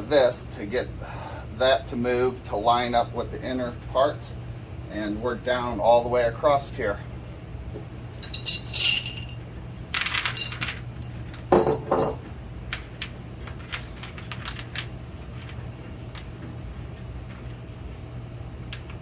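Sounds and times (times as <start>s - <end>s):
small metal hardware clinking: 8.2s - 12.2s.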